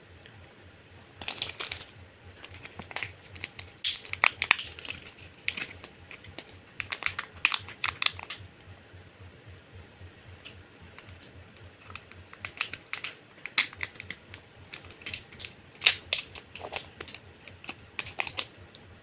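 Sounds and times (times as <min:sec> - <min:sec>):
wrapper crinkling: 0:01.2 - 0:08.4.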